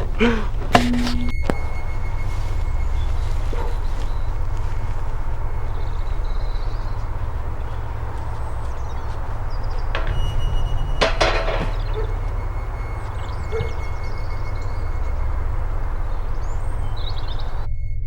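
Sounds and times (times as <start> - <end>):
small birds chirping: 0.0 - 17.7
wind rumbling on microphone: 1.4 - 17.7
sharp knocks with metallic ring: 9.6 - 17.6.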